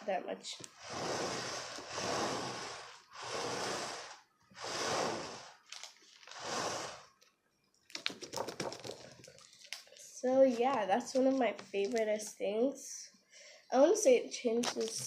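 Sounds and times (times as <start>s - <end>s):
loud close breaths: 13.2s - 13.7s.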